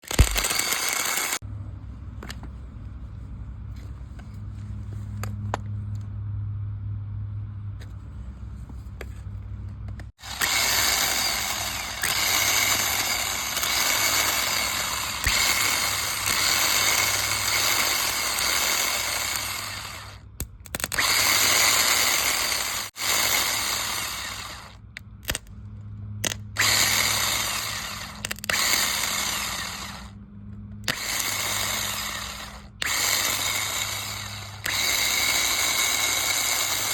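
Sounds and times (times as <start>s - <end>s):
motor whirring: 0.0s - 1.4s, 10.2s - 20.2s, 20.9s - 25.4s, 26.2s - 30.2s, 30.8s - 36.9s.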